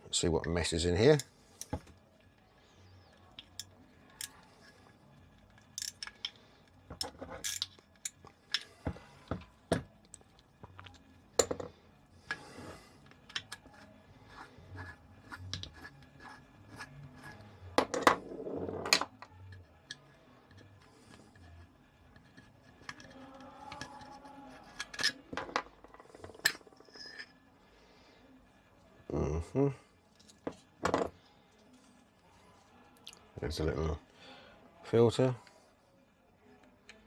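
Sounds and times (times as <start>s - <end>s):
metal tools clicking and tapping: 1.1s - 2.0s, 3.2s - 4.5s, 5.4s - 12.4s, 13.0s - 13.8s, 19.0s - 27.3s
metal rasping scrape: 12.3s - 17.8s.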